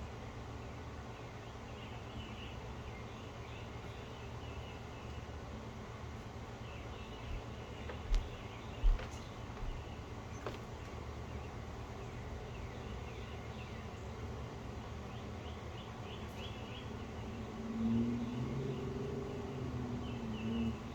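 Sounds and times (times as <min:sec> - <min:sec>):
birds chirping faintly: 0:00.2 - 0:20.9
dull thumps: 0:07.4 - 0:11.0.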